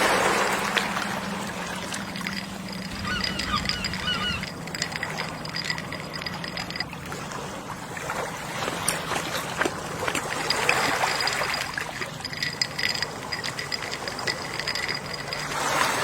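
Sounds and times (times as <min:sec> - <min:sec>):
sea waves washing in: 0:00.0 - 0:04.4.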